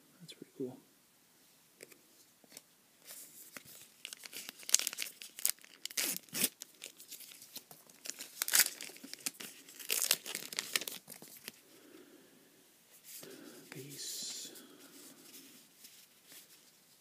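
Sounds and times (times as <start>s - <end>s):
foil wrapper tearing and crinkling: 3.5s - 11.6s.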